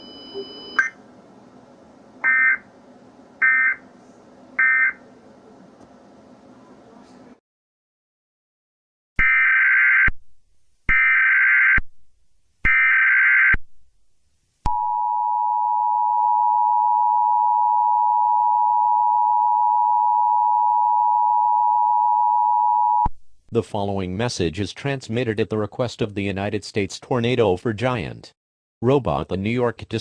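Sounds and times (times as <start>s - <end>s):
two-tone attention signal: 0.0s - 1.0s.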